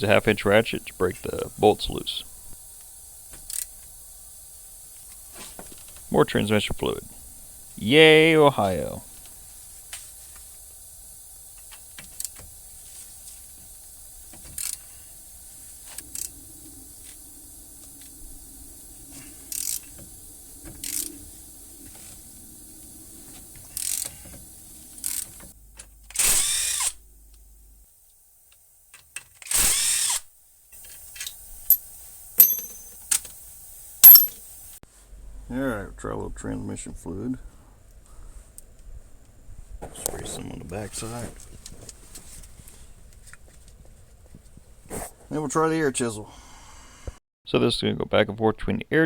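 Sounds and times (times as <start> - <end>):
ratchet clicking: 2.7 - 6.1, 8.8 - 16.4, 17.0 - 22.2, 23.5 - 27.4, 28.9 - 34.5.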